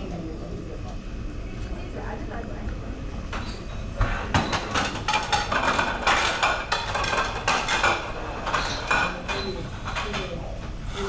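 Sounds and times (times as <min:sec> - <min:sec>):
metal utensils clattering on dishes: 0:03.3 - 0:11.0.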